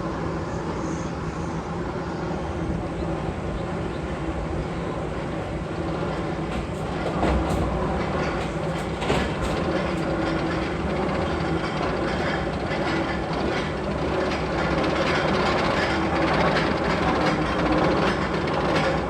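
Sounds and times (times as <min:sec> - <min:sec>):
roller coaster rumbling on track: 0:00.0 - 0:19.0
sharp clacks: 0:05.9 - 0:12.4.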